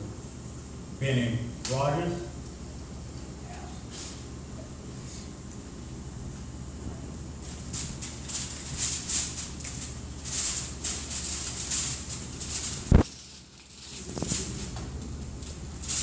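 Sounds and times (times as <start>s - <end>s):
low steady hum: 0.0s - 16.0s
rustling and shuffling: 7.4s - 16.0s.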